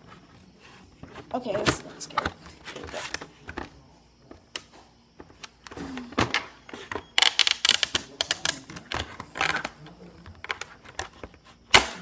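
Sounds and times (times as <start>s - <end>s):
plastic packaging crackling and clicking: 5.2s - 12.0s.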